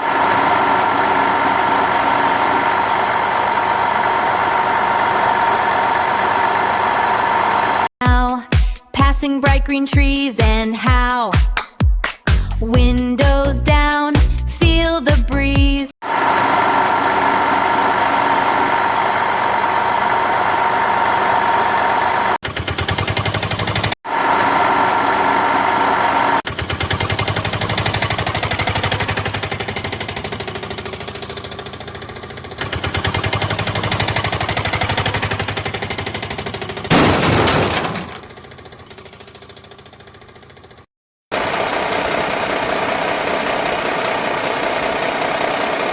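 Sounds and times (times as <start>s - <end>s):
engine running with knocking pulse: 0.0s - 7.9s, 16.1s - 45.9s.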